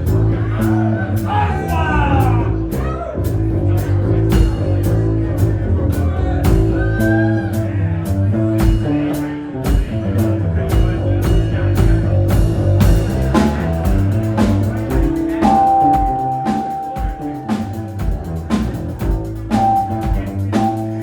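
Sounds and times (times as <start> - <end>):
bass guitar: 0.0 - 21.0
keyboards: 3.7 - 21.0
drum beat: 10.7 - 21.0.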